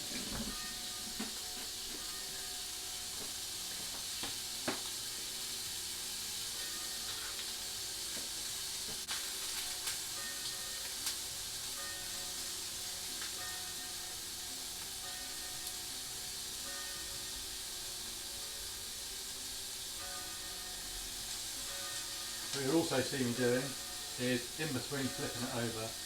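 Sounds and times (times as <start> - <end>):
church bells ringing: 0.0 - 3.2, 6.6 - 7.4, 10.2 - 18.8, 20.0 - 26.0
steak sizzling in a frying pan: 0.0 - 26.0.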